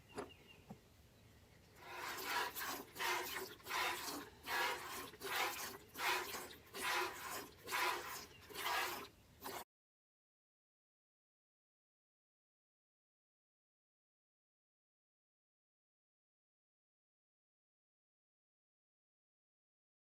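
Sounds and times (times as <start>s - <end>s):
milk squirting into bucket: 1.8s - 9.6s.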